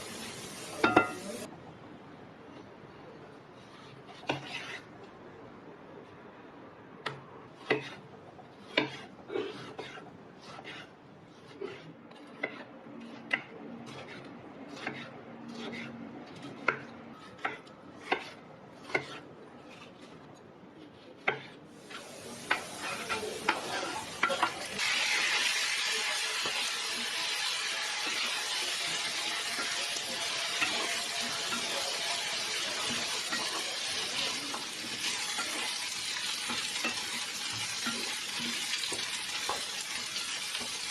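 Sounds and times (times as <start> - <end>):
food sizzling in hot oil: 0.0 - 1.5, 21.8 - 40.9.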